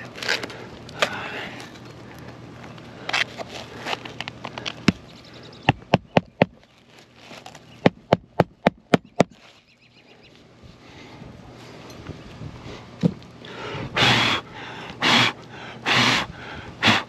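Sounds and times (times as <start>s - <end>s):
hammer striking nails into shingles: 5.7s - 6.6s, 7.8s - 9.4s.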